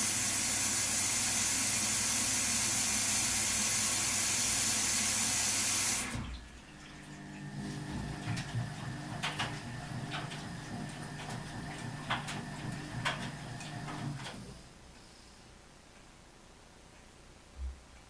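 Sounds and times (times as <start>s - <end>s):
washing machine humming: 0.0s - 15.0s
washing machine clicks and knocks: 7.8s - 14.4s.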